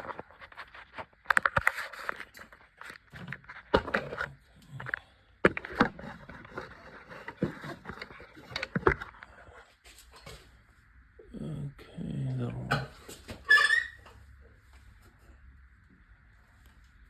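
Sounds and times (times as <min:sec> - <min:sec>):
things being handled and fitted: 0:00.0 - 0:10.6.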